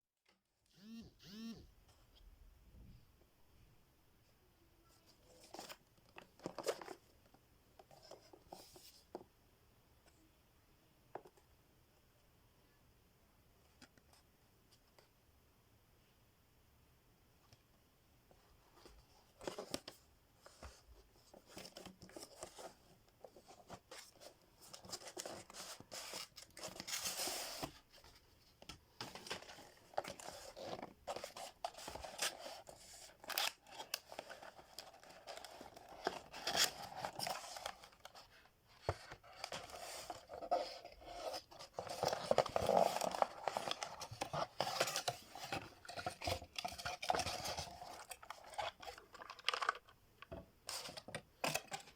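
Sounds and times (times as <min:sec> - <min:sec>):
rustling and tearing packaging: 0:29.0 - 0:50.0.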